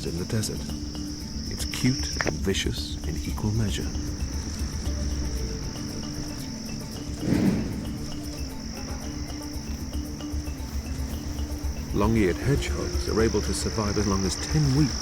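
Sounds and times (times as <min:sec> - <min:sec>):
crickets trilling: 0:00.0 - 0:15.0
brief louder noise: 0:07.2 - 0:08.5.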